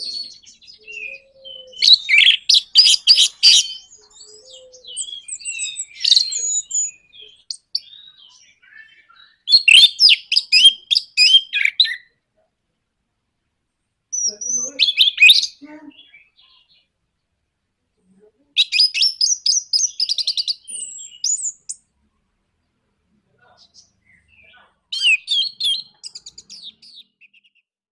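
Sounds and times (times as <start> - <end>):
thrush whistling song: 0.0 - 12.1, 14.2 - 16.4, 18.6 - 21.8, 24.0 - 27.6.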